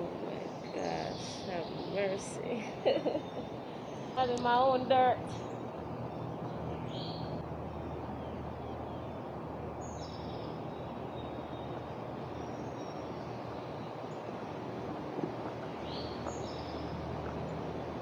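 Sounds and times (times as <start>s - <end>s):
low background rumble: 0.0s - 18.0s
bird chirps: 5.4s - 7.4s, 8.0s - 14.3s, 15.7s - 17.6s.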